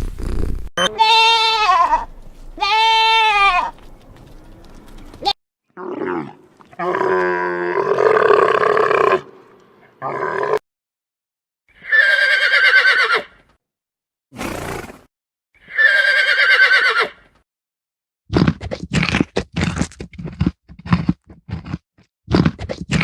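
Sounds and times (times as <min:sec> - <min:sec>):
rapid rough sounds: 0:00.0 - 0:00.7
horse whinnying: 0:11.8 - 0:13.4, 0:14.4 - 0:17.2
horse breathy burst: 0:14.4 - 0:15.1.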